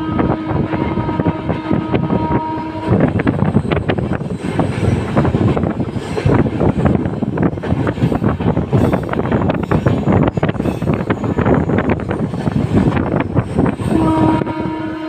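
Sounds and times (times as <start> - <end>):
locomotive horn: 0.0 - 3.4, 13.8 - 15.0
train coach rumbling: 0.0 - 15.0.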